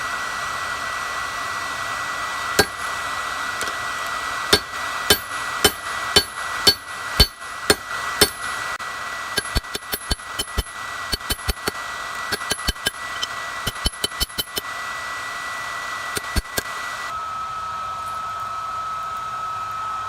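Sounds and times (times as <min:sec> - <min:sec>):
steady rushing hiss: 0:01.7 - 0:14.9
hammer striking steel on anvil: 0:02.6 - 0:02.9, 0:04.5 - 0:08.5, 0:09.4 - 0:14.6, 0:16.2 - 0:16.6.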